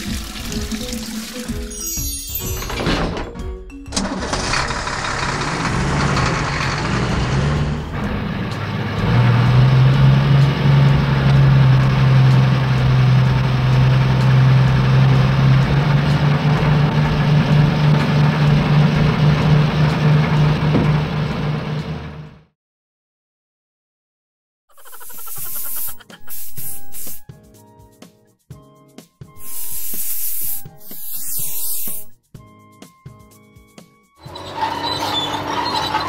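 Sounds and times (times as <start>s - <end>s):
vehicle engine running: 4.0s - 22.5s.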